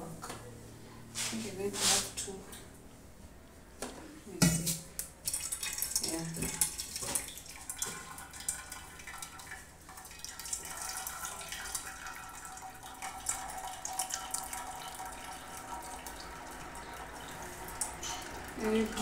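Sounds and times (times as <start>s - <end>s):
water dripping and splashing: 4.7s - 19.0s
hot water pouring through a sieve: 5.1s - 19.0s.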